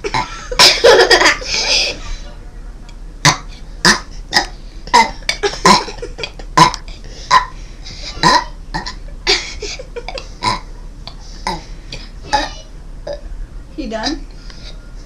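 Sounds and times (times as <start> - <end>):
child burping: 3.2 - 7.5, 8.1 - 9.0, 10.1 - 10.7, 11.4 - 13.2.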